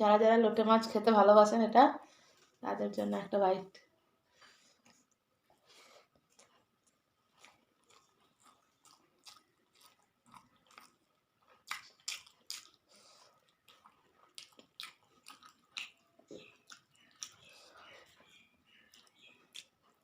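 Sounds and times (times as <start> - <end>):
mouth chewing crunchy food: 4.5 - 20.0
wet mouth clicks: 11.7 - 12.8.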